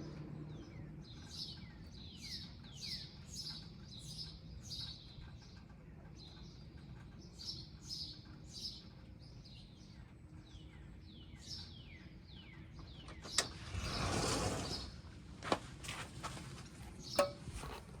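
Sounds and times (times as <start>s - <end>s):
small birds chirping: 0.0s - 14.0s.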